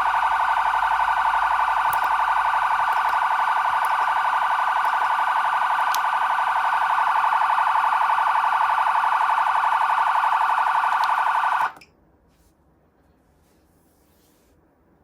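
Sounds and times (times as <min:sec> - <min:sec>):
fast-warbling electronic siren: 0:00.0 - 0:11.8.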